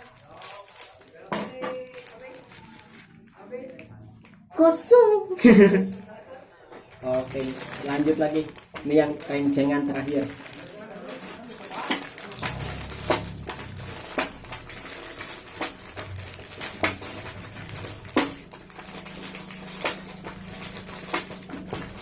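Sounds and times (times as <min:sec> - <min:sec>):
plastic wrappers crinkling: 0:00.0 - 0:04.5, 0:05.4 - 0:22.0
low steady hum: 0:12.4 - 0:22.0.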